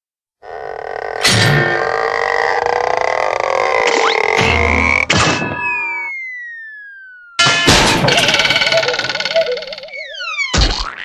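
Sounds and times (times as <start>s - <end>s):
downward sliding whistle: 5.7s - 7.5s
cartoon music: 5.8s - 11.0s.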